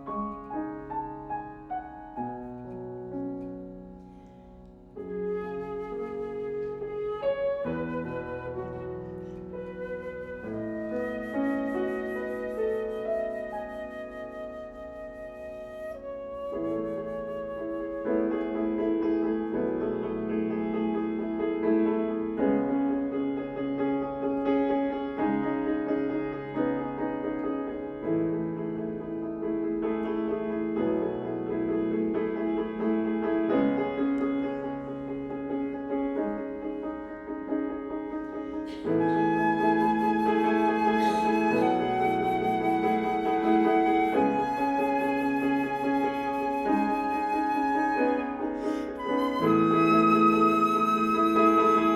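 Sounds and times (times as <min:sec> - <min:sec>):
piano chords: 0:00.0 - 0:51.9
flute playing: 0:05.0 - 0:19.1, 0:38.7 - 0:51.9.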